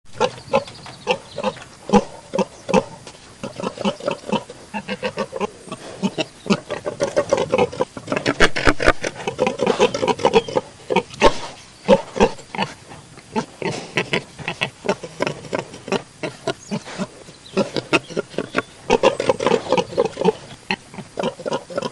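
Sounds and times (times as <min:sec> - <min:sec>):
pigs grunting: 0:00.1 - 0:21.9.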